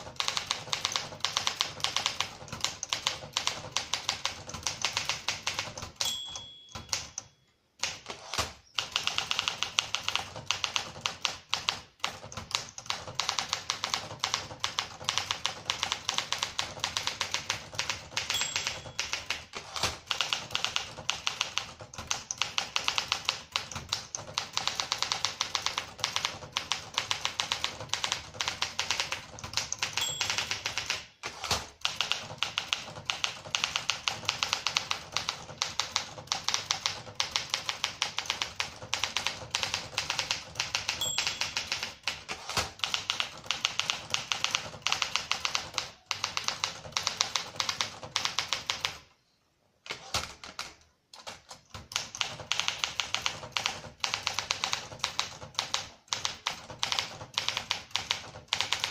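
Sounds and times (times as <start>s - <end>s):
typewriter key strikes: 0.1s - 11.7s, 12.3s - 48.8s
typewriter bell ping: 5.8s - 7.5s, 18.1s - 19.8s, 29.8s - 31.0s, 40.9s - 42.1s.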